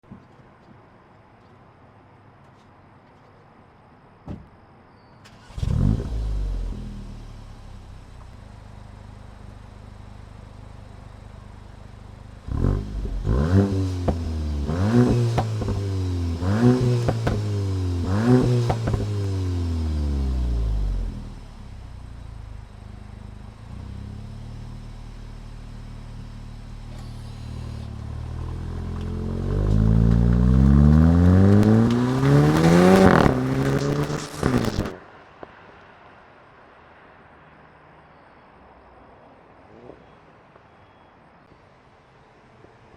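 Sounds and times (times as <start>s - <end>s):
car engine idling and revving: 5.3s - 35.0s
exhaust pops and crackles: 8.0s - 35.6s.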